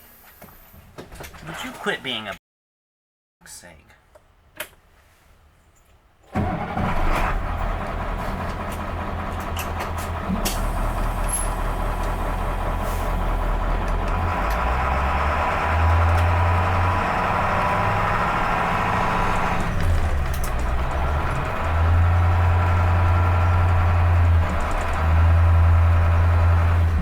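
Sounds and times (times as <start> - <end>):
bus engine running: 6.4 - 27.0.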